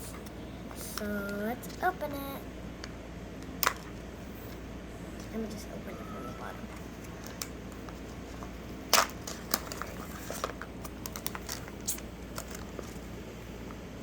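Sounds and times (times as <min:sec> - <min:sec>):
wrapping crinkling and clicking: 0:06.7 - 0:13.1.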